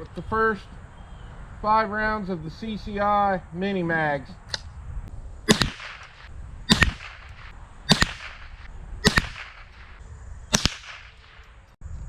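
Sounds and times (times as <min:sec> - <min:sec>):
rifle shots with echo: 0:05.5 - 0:11.5.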